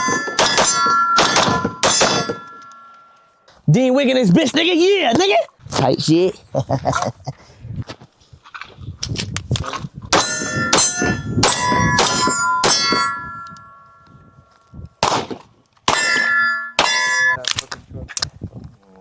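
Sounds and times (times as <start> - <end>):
pistol shots: 0.0 - 2.8, 15.0 - 17.3
steel targets clanging: 0.0 - 3.2, 10.2 - 14.0, 15.9 - 17.4.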